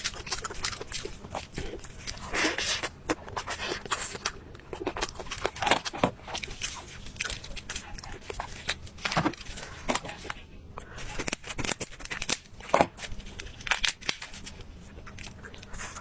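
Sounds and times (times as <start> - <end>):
crunchy food chewing: 0.0 - 16.0.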